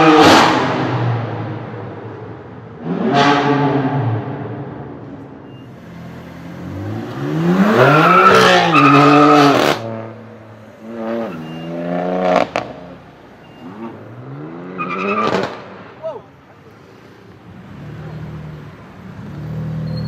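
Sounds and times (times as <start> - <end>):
car engine revving hard: 6.5 - 10.1.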